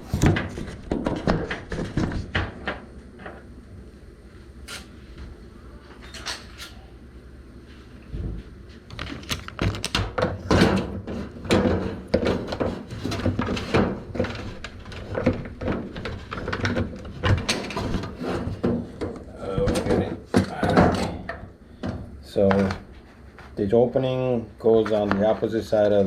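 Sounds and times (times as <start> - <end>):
washing machine parts clunking: 9.0 - 22.8.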